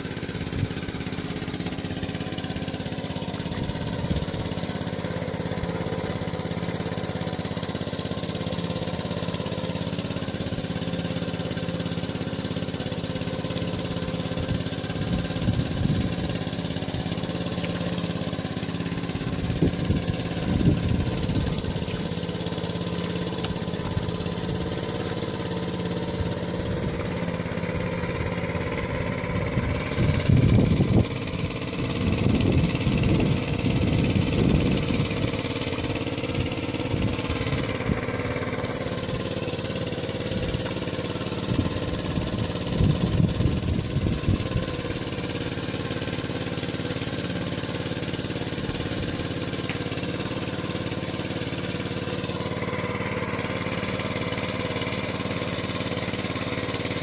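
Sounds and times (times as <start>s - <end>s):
small engine running: 0.0s - 57.0s.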